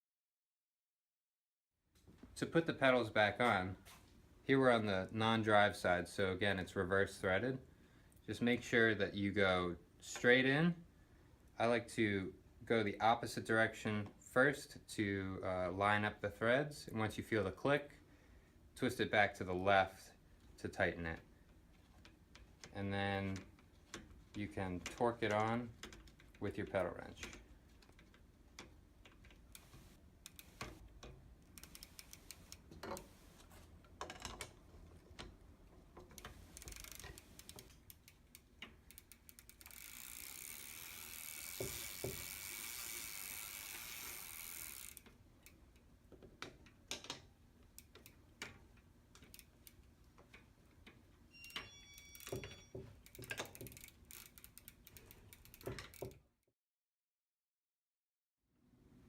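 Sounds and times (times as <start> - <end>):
pedal wrench clicking: 21.7 - 26.4, 27.1 - 33.2, 35.0 - 56.2.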